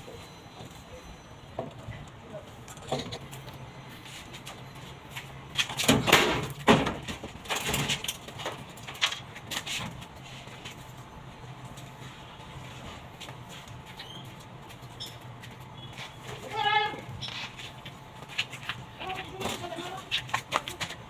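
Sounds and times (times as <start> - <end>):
knocks and clatter on sheet metal: 5.8 - 8.6.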